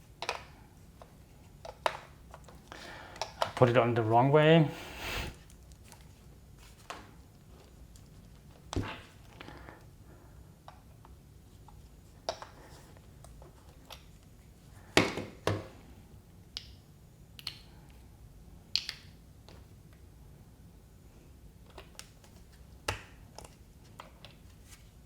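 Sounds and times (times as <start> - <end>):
plastic parts clicking and tapping: 0.2 - 3.8.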